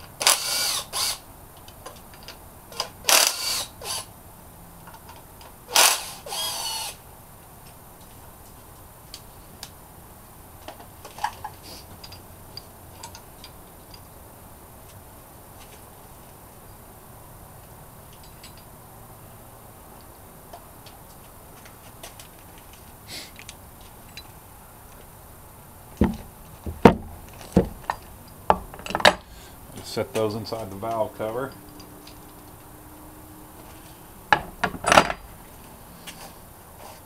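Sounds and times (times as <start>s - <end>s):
power driver whirring: 5.7s - 7.0s.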